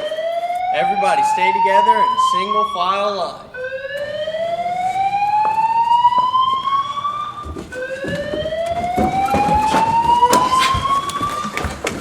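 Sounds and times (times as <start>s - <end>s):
fire alarm whoop tone: 0.0s - 11.7s
knocks: 7.4s - 12.0s.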